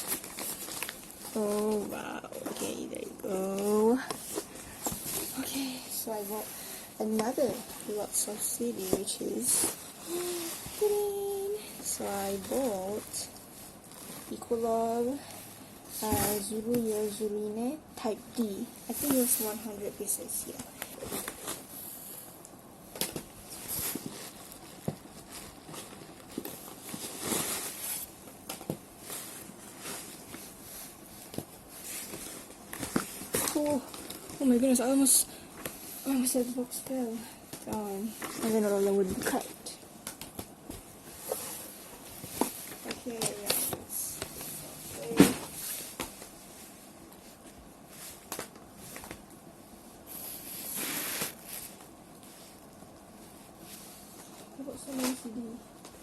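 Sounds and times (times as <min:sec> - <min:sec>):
packaging rustling: 0:00.0 - 0:02.6.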